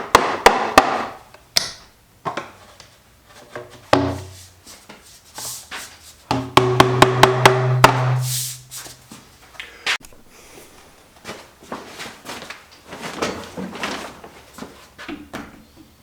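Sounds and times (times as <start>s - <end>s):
music with percussive hits: 4.0s - 4.4s, 6.3s - 8.4s.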